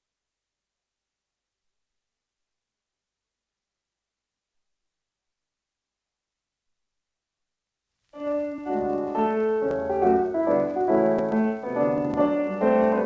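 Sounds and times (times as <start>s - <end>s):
piano on old record: 8.2s - 13.0s
record surface clicks: 8.2s - 13.0s.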